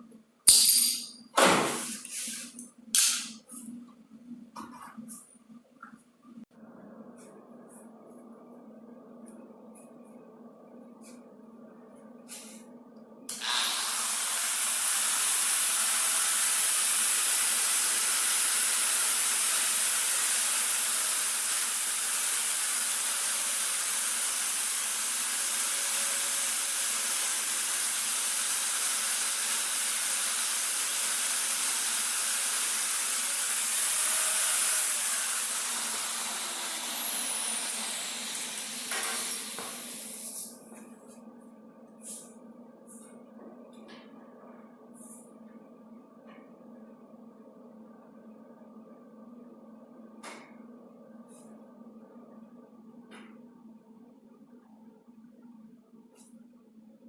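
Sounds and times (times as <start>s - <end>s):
grinder grinding metal: 18.9s - 40.4s.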